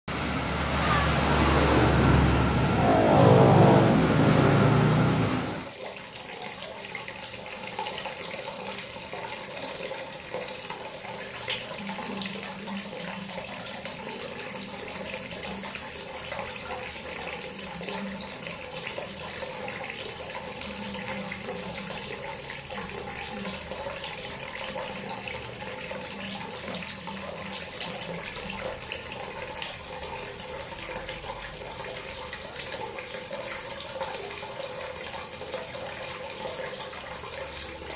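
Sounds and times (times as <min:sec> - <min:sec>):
water running from a tap: 0:00.1 - 0:37.9.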